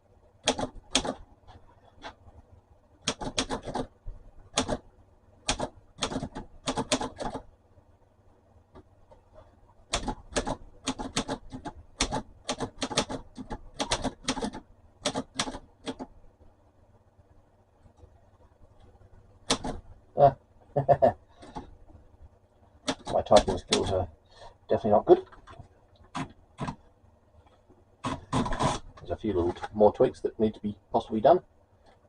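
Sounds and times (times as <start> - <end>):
manual typewriter keystrokes: 0.4 - 1.2, 3.0 - 3.9, 4.5 - 4.8, 5.5 - 7.4, 9.9 - 16.1, 19.4 - 19.8, 22.8 - 24.0.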